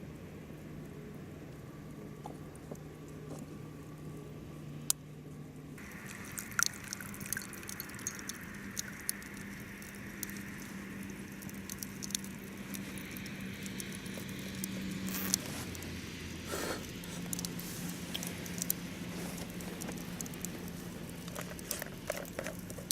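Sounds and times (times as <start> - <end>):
campfire crackling and popping: 5.8 - 22.9.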